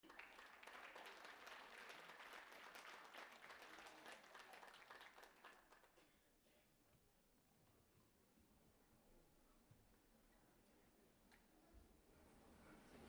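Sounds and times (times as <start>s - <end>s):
faint audience applause: 0.0s - 6.1s.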